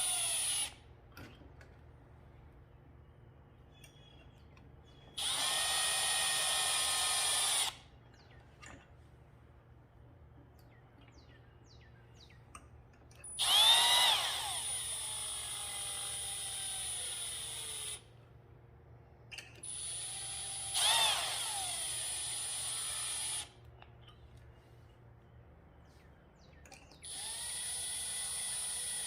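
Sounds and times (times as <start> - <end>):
cordless drill motor whining: 0.0 - 0.8, 5.2 - 7.9, 13.3 - 18.1, 19.6 - 23.6, 27.0 - 29.0.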